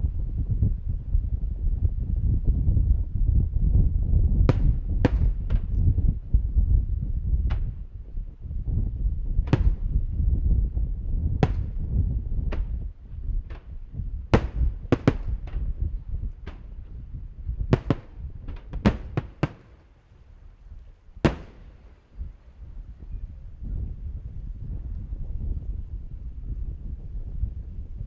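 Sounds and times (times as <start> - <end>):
wind rumble on microphone: 0.0 - 28.0
fireworks bursting with sharp bangs: 4.4 - 5.7, 9.4 - 10.1, 11.4 - 20.5, 21.2 - 22.4.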